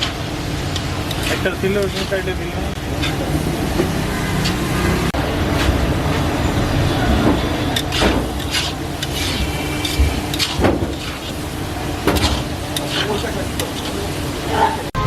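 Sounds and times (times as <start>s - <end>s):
frying sizzle: 0.0s - 15.0s
metal spatula scraping a wok: 1.0s - 4.8s, 7.6s - 11.5s, 12.2s - 15.0s.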